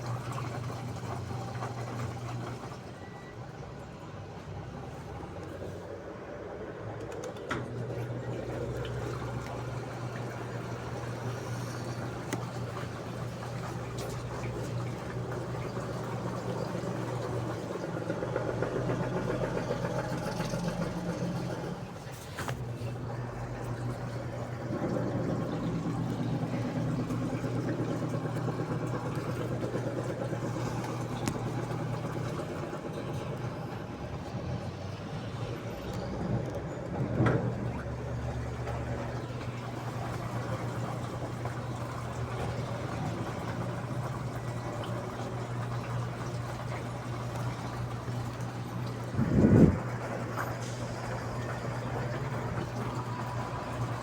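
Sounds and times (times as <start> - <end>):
washing machine motor hum: 0.0 - 54.0
water sloshing in drum: 7.6 - 35.2, 36.9 - 54.0.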